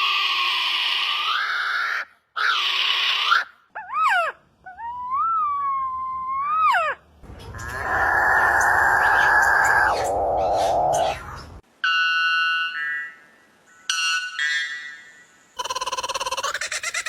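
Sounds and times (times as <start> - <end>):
harsh rasping bird calls: 7.3 - 11.6
bird whistling: 7.4 - 11.5.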